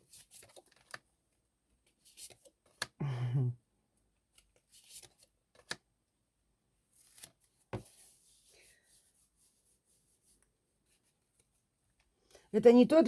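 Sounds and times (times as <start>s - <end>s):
cards rustling: 0.1s - 1.0s, 1.9s - 2.9s, 4.4s - 5.8s.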